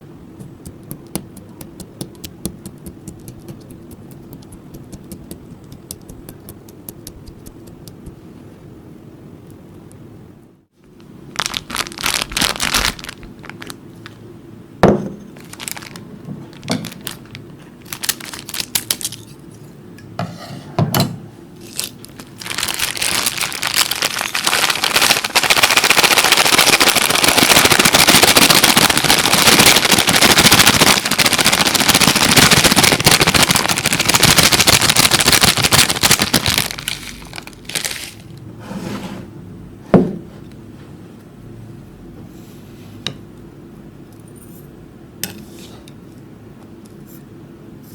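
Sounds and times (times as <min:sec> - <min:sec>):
materials crackling: 0:11.3 - 0:13.8, 0:21.7 - 0:38.3.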